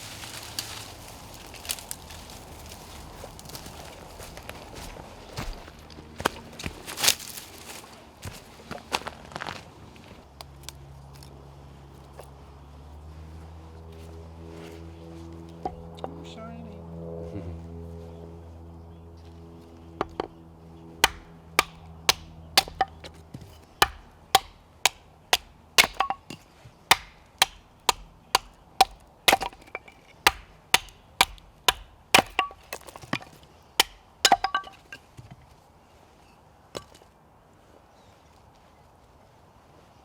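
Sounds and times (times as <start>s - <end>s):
axe chopping firewood: 20.0s - 20.4s, 21.0s - 35.1s.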